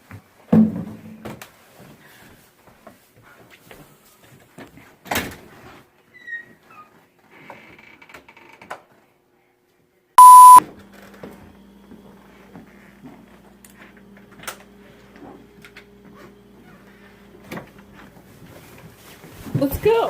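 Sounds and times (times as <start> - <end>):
loud electronic beep: 10.2 - 10.6.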